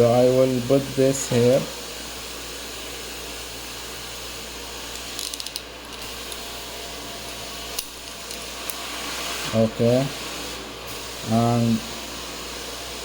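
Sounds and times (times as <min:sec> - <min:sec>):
steady background hiss: 0:00.0 - 0:13.0
ratchet crimping tool clicking: 0:04.9 - 0:06.5.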